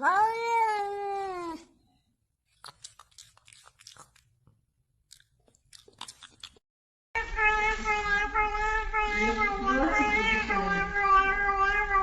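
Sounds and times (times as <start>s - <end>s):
cat meowing: 0.0s - 1.7s, 7.2s - 12.0s.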